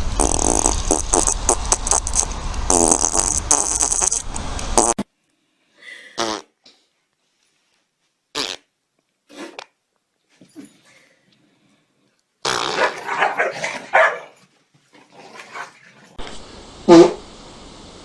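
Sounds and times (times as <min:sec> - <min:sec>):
long loud fart: 0:00.2 - 0:04.2, 0:04.8 - 0:05.1, 0:06.2 - 0:06.6, 0:08.3 - 0:08.7, 0:12.4 - 0:13.0, 0:16.9 - 0:17.2.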